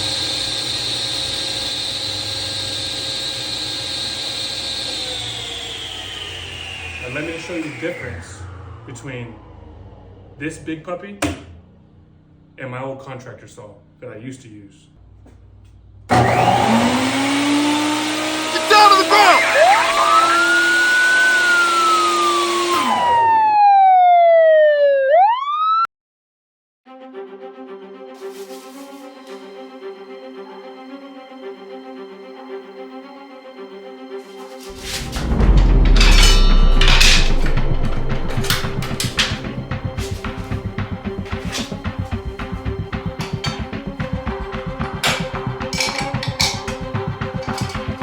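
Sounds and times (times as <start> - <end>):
table saw motor whining: 0.0 - 9.0, 16.1 - 23.9, 34.6 - 48.0
wailing police siren: 5.0 - 10.4, 18.4 - 25.9, 35.2 - 48.0.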